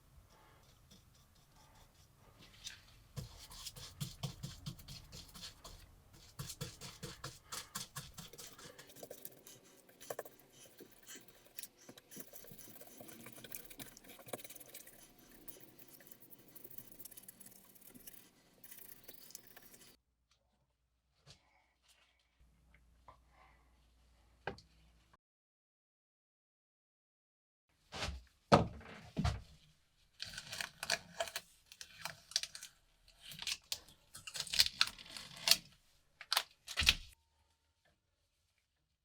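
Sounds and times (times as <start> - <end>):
scraping on metal knife: 6.9 - 20.0.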